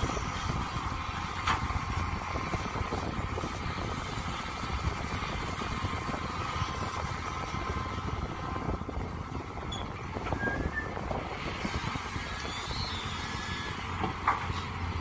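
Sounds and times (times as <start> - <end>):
mini excavator engine running: 0.0 - 15.0.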